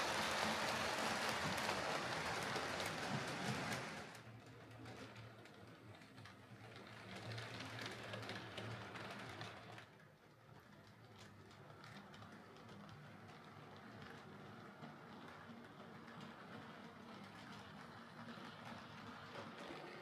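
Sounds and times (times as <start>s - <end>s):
wheels clicking on rails: 0.0s - 10.0s.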